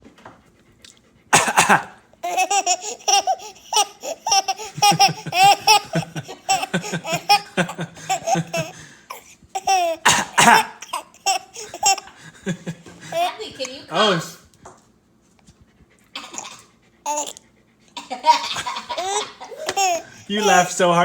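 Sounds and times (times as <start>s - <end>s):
person coughing: 1.4s - 3.0s, 4.8s - 12.0s, 16.2s - 16.7s
baby girl laughing: 1.4s - 12.2s, 13.0s - 13.8s, 16.2s - 17.4s, 18.0s - 20.8s.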